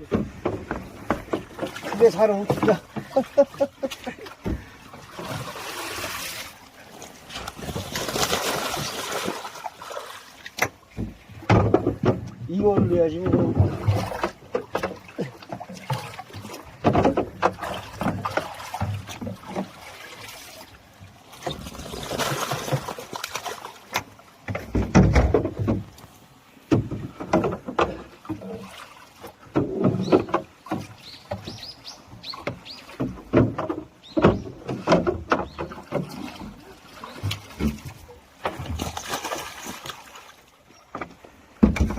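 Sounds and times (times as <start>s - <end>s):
water rushing: 0.0s - 41.9s
water splashing: 0.0s - 41.9s
heavy splash: 1.5s - 6.6s, 7.3s - 10.5s, 21.3s - 23.8s, 36.0s - 40.4s
irregular knocks: 10.6s - 15.0s.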